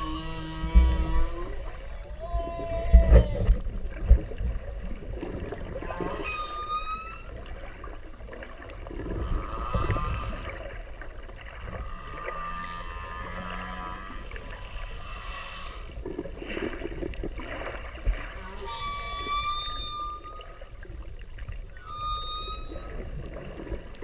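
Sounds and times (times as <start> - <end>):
whale calls: 0.0 - 3.7, 5.6 - 8.0, 8.9 - 10.9, 11.6 - 16.0, 18.0 - 24.0.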